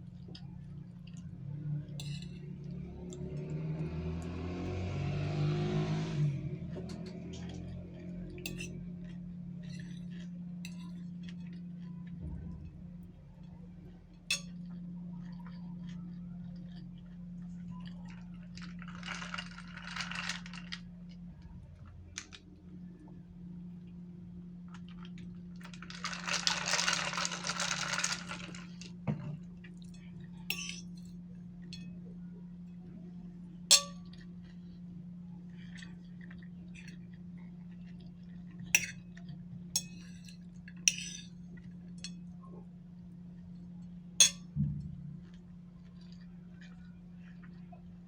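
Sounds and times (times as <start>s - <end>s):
steady low hum: 0.0s - 3.6s, 28.0s - 48.0s
utensils clinking on a plate: 2.0s - 2.6s, 8.4s - 8.9s, 9.6s - 11.5s, 14.3s - 14.7s, 26.0s - 31.1s, 33.7s - 34.2s, 38.8s - 39.2s, 39.8s - 41.4s, 44.2s - 44.6s
crackly noise: 24.7s - 28.9s.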